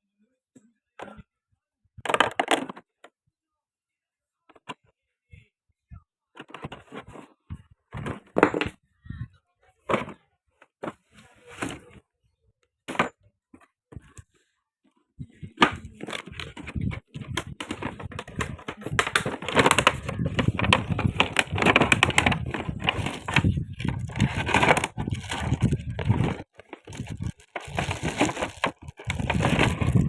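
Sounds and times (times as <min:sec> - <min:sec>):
packaging rustling and crinkling: 0:16.1 - 0:30.0.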